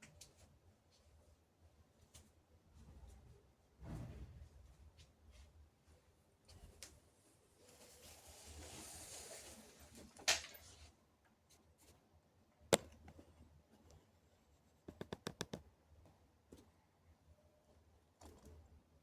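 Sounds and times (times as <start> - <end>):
sharp clicks and knocks: 14.9 - 15.6.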